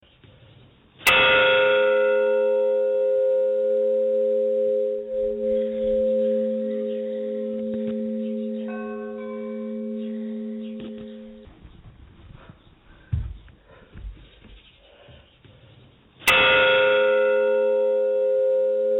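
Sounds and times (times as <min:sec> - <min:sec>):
church bell ringing: 0:01.1 - 0:11.5, 0:16.3 - 0:18.9
higher bell ring: 0:01.1 - 0:11.5, 0:16.3 - 0:18.9.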